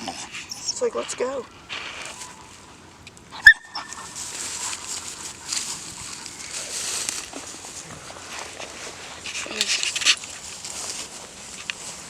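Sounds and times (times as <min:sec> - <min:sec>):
brush rustling: 0:00.0 - 0:12.0
dog yelping: 0:03.3 - 0:06.5.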